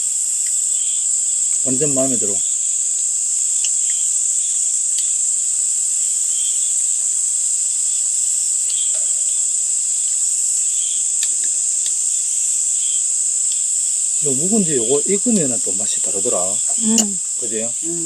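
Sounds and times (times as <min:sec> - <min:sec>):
insects shrilling: 0:00.0 - 0:18.0
soft pulsing insect call: 0:00.0 - 0:18.0
faint clicks: 0:11.2 - 0:12.0.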